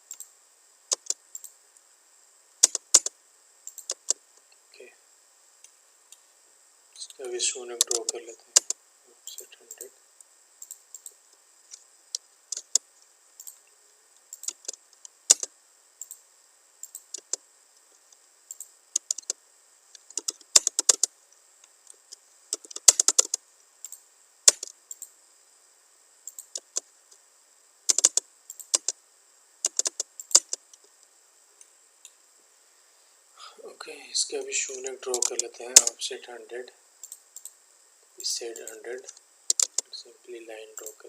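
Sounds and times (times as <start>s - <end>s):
computer keyboard typing: 0.9s - 1.5s, 2.6s - 3.1s, 3.7s - 4.2s, 14.4s - 16.2s, 16.8s - 17.4s, 18.5s - 19.4s, 20.1s - 21.1s, 22.6s - 23.4s, 26.3s - 26.8s, 27.9s - 29.0s, 29.7s - 30.6s, 39.5s - 39.9s.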